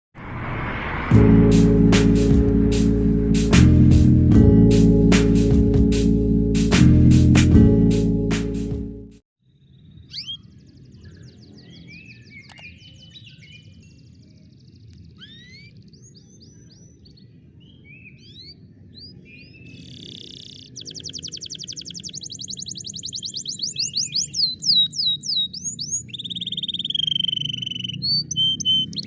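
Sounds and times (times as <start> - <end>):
low background rumble: 0.2 - 6.6
canary singing trills: 9.6 - 29.0.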